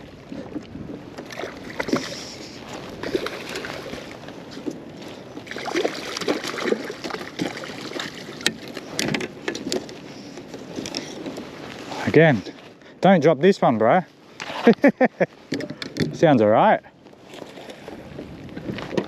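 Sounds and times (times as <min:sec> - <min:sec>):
knocks and clatters on boat: 0:00.0 - 0:11.6, 0:15.4 - 0:19.0
water sloshing and splashing: 0:00.0 - 0:12.8, 0:17.0 - 0:19.0.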